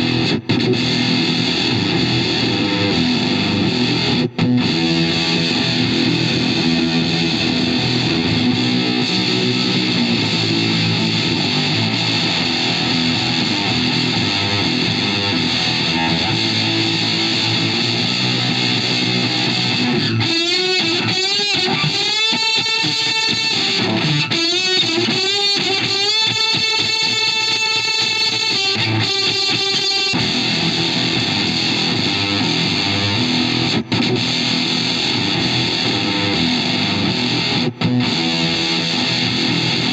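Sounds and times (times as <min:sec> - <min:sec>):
distorted fuzz electric guitar: 0:00.0 - 0:39.9.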